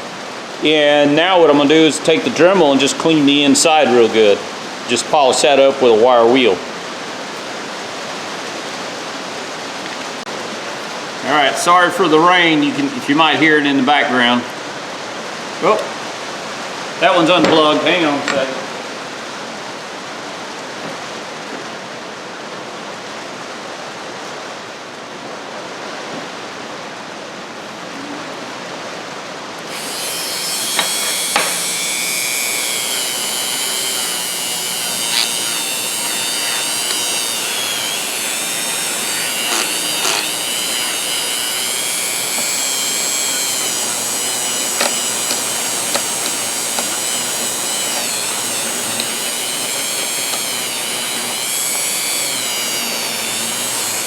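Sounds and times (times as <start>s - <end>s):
rotary tool whine: 29.7s - 54.0s.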